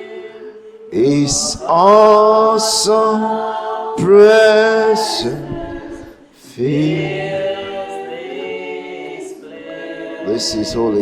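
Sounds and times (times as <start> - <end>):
group singing worship song: 0.0 - 11.0.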